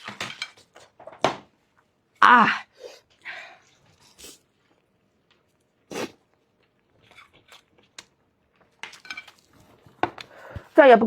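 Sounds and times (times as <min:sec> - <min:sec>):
person chewing: 0:03.9 - 0:10.0.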